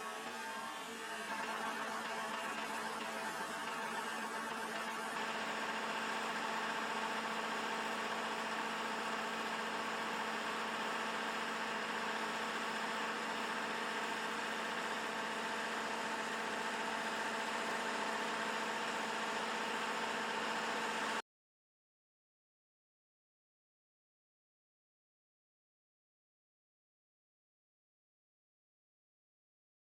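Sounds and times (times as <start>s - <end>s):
combine harvester running: 0.0s - 21.2s.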